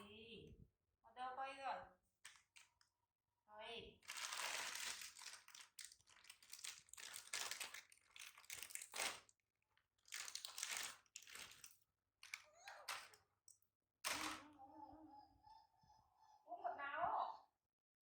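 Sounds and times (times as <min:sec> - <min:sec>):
crinkling and rustling: 0:02.2 - 0:02.9, 0:04.0 - 0:14.5.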